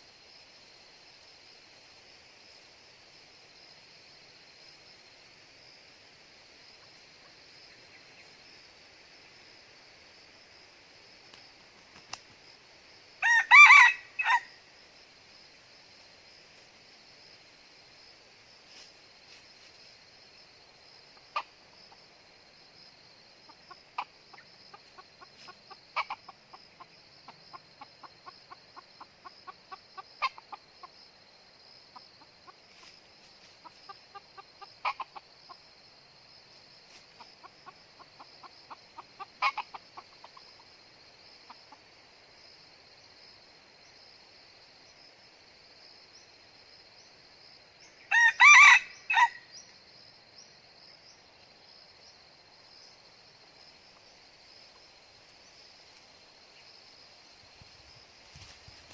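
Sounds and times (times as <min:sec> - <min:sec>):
junglefowl clucking: 0:13.2 - 0:14.5, 0:21.2 - 0:21.6, 0:23.5 - 0:31.0, 0:33.6 - 0:35.6, 0:36.9 - 0:40.7, 0:48.1 - 0:49.4.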